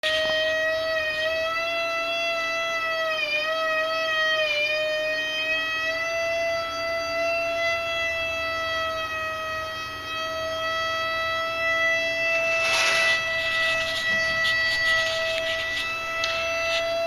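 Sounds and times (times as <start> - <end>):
brief hiss: 12.5 - 13.3.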